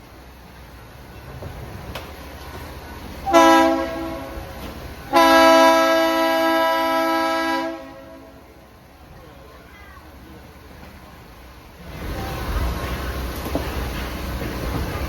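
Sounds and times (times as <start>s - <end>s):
locomotive air horn blasts: 3.2s - 4.5s, 5.1s - 8.4s.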